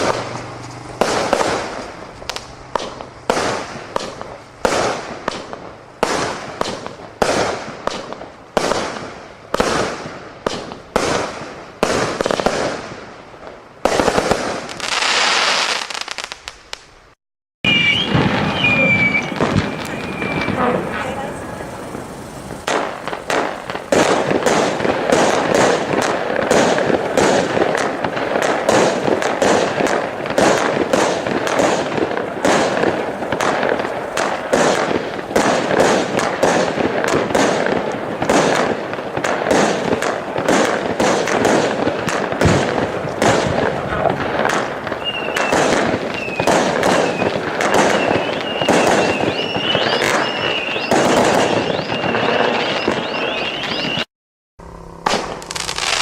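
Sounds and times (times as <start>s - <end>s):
fireworks shots and crackling: 0.0s - 54.1s, 54.7s - 56.0s
high wavering whistle: 17.6s - 21.6s, 45.0s - 54.1s.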